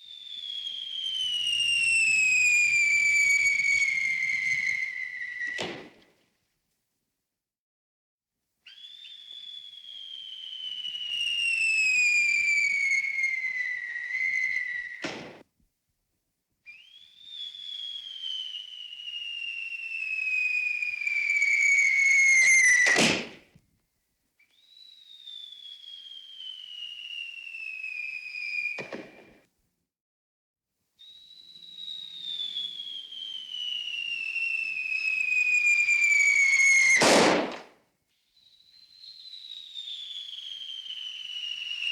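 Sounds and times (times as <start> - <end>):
cartoon falling whistle: 16.8 - 23.3, 31.8 - 37.2.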